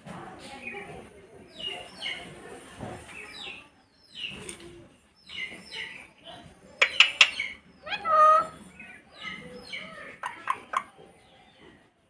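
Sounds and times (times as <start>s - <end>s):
parrot chirping: 6.8s - 8.6s, 10.1s - 10.8s.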